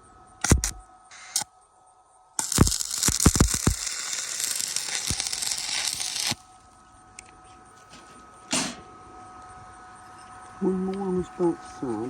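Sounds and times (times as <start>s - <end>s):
electrical hum: 0.0s - 12.0s
sharp pops: 0.4s - 1.4s, 2.4s - 6.4s
welding arc crackling: 0.4s - 1.5s, 2.4s - 6.6s.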